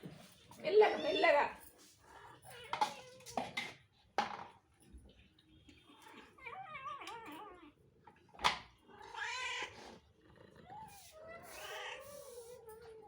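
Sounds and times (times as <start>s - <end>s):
cats meowing: 2.0s - 3.9s, 5.3s - 13.0s.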